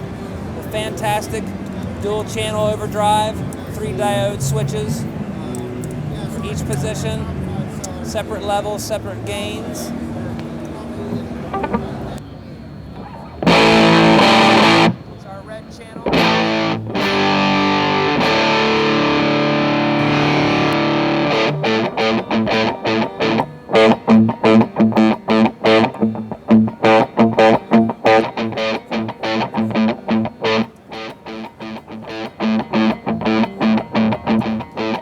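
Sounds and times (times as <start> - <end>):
overdriven electric guitar: 9.9 - 12.2, 13.0 - 15.2, 16.0 - 35.0.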